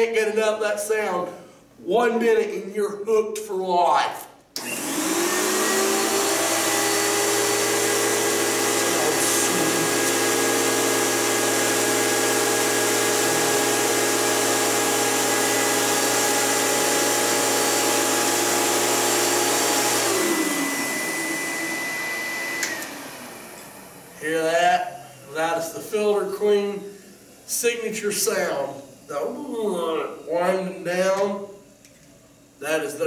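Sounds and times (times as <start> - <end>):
vacuum cleaner whining: 4.5 - 31.8.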